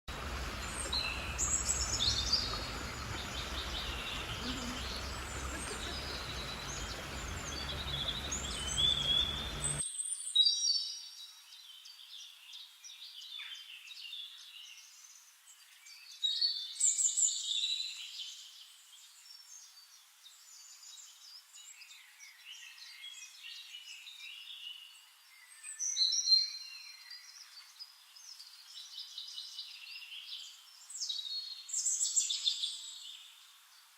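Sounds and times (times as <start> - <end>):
birds chirping: 0.1 - 9.8.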